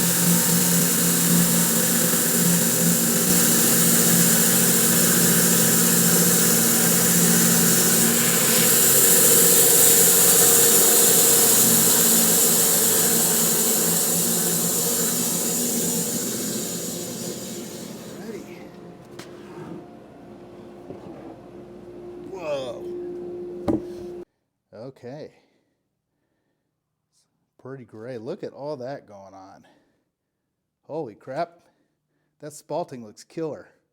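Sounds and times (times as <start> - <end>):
saw blade hissing in wood: 0.0 - 19.9
motor hum: 0.0 - 24.2.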